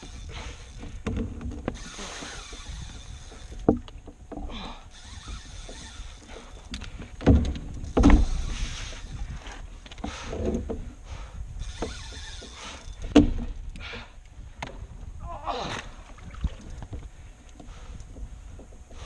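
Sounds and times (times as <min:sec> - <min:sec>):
water rushing along a hull: 0:00.0 - 0:19.0
loud thumps against boat: 0:07.2 - 0:08.7, 0:13.1 - 0:13.6.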